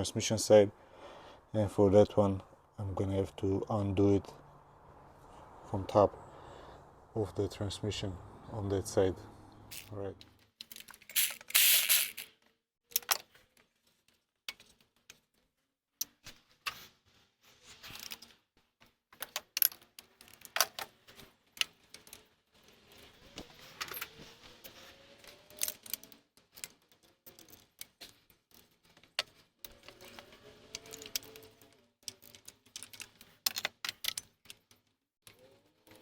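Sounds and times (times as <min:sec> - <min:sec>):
metal hand tools clinking: 0:11.1 - 0:12.3.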